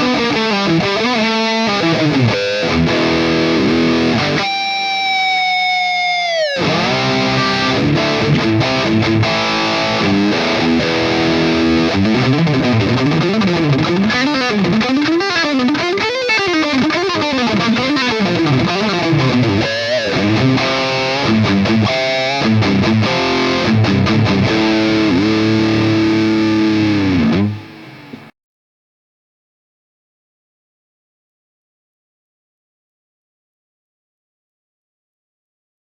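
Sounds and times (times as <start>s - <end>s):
distorted electric guitar: 0.0s - 28.3s.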